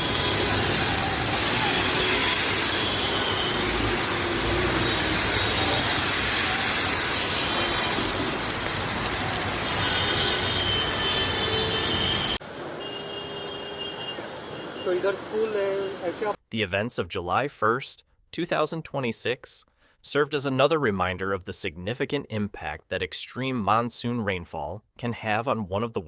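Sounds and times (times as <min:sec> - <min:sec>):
heavy rain: 0:00.0 - 0:12.4
street and vehicle noise: 0:00.0 - 0:16.4.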